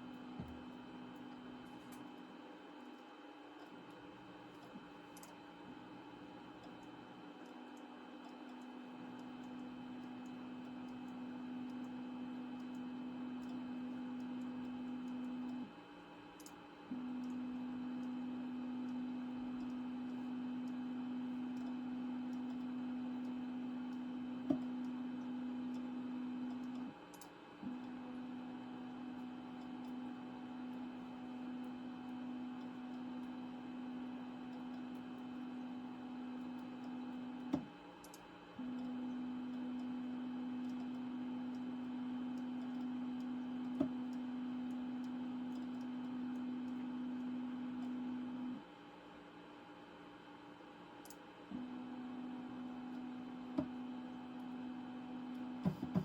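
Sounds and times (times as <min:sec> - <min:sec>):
steady hum: 0:51.0 - 0:56.0.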